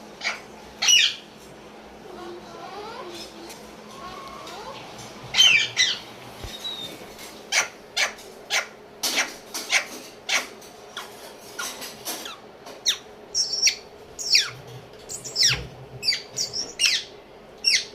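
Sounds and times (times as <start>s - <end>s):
parrot squawking and whistling: 0.2s - 1.2s, 5.3s - 11.1s, 12.2s - 17.9s.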